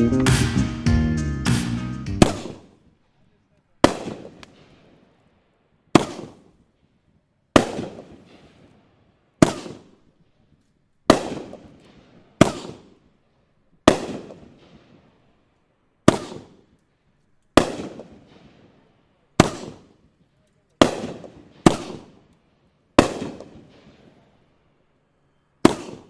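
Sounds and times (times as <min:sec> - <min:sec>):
fireworks bangs echoing: 0:01.5 - 0:02.9, 0:03.8 - 0:05.1, 0:05.9 - 0:06.8, 0:07.6 - 0:10.1, 0:11.1 - 0:13.0, 0:13.8 - 0:15.2, 0:16.0 - 0:16.8, 0:17.6 - 0:20.1, 0:20.8 - 0:22.2, 0:23.0 - 0:24.3, 0:25.6 - 0:26.0.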